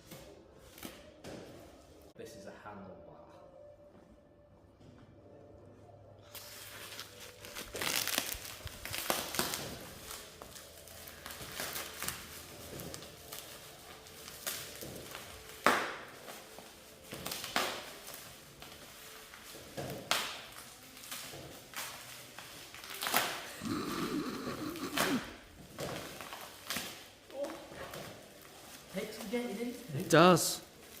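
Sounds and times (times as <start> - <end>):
packaging crinkling: 6.3 - 29.9
packaging ripping: 6.3 - 29.9.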